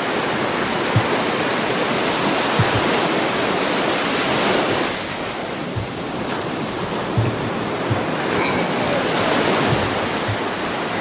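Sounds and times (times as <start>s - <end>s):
ocean waves washing on beach: 0.0s - 11.0s
wind thumps on microphone: 0.8s - 1.4s, 2.4s - 3.4s, 4.5s - 11.0s.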